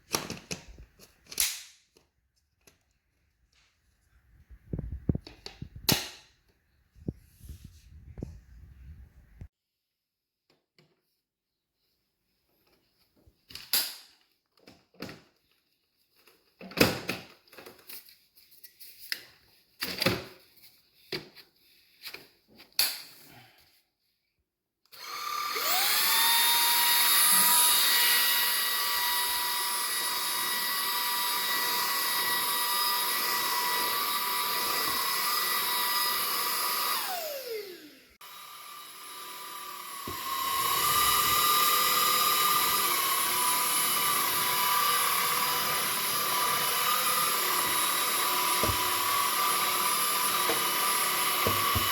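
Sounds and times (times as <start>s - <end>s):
vacuum motor whine: 24.9s - 51.9s.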